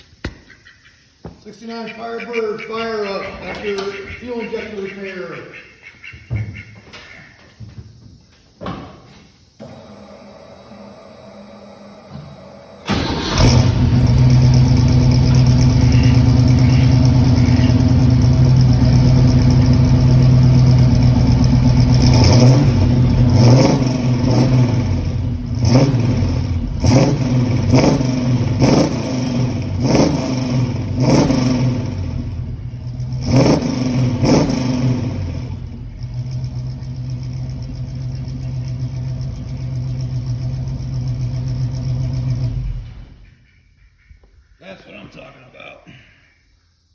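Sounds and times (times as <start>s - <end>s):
car engine idling: 1.5s - 5.6s, 9.6s - 43.6s
car engine starting: 2.8s - 4.9s, 9.5s - 43.6s
engine revving: 9.6s - 43.2s.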